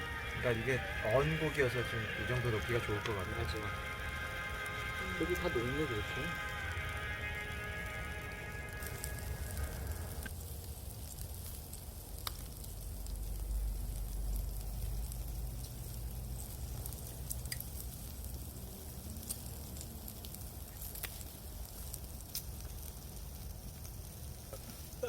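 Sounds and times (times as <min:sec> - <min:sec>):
fire crackling pops: 0:00.0 - 0:25.0
meat sizzling over fire: 0:00.0 - 0:25.0
low rumble: 0:06.3 - 0:22.2.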